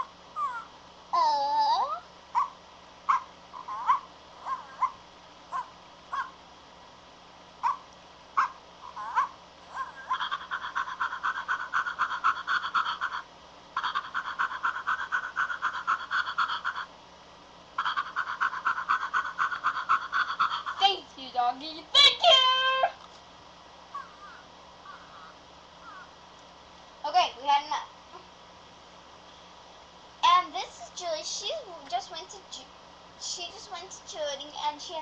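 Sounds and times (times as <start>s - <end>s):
dog yapping rapidly: 0.0s - 6.4s, 7.6s - 16.9s, 17.8s - 21.0s, 22.0s - 23.0s, 23.9s - 26.1s
dog yipping and whining: 0.0s - 6.4s, 7.6s - 13.2s, 22.0s - 23.0s, 24.0s - 26.1s.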